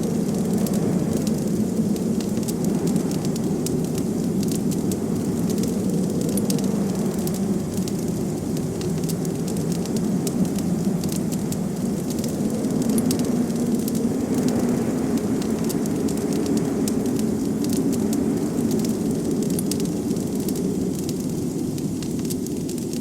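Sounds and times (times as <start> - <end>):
blizzard wind rushing: 0.0 - 23.0
wood fire crackling and popping: 0.0 - 23.0.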